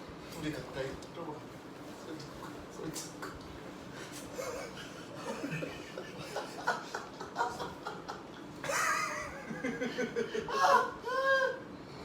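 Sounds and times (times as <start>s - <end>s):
people laughing: 4.4s - 11.6s.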